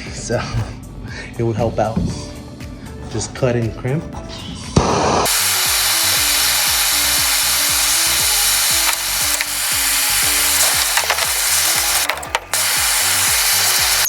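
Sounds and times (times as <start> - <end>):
background music with bass line: 0.0 - 14.0
steady loud hiss: 4.8 - 14.0.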